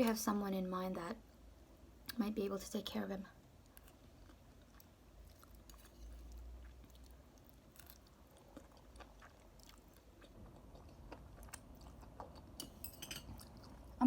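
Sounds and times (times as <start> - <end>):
chewing noodles: 3.6 - 14.0.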